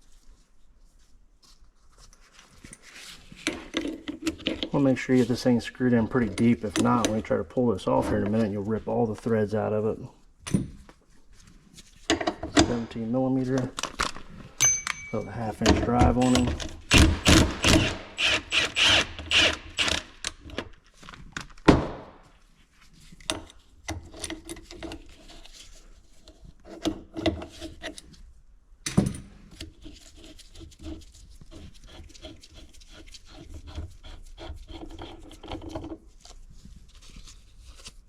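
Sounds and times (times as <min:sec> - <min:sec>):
wrench clicking and scraping: 0:16.1 - 0:20.4.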